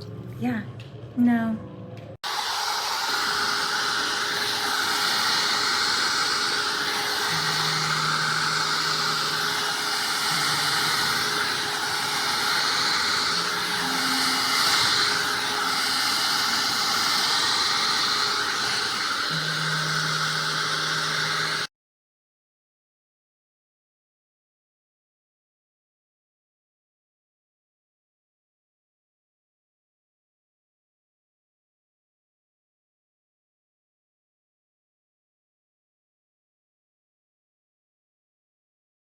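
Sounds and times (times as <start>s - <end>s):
hair dryer fan running: 2.2s - 21.7s.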